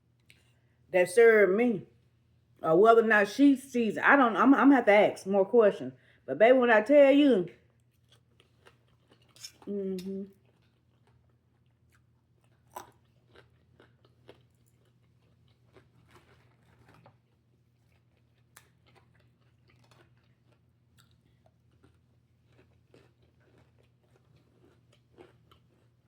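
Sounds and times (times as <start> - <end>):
chewing and biting food: 7.8 - 26.0.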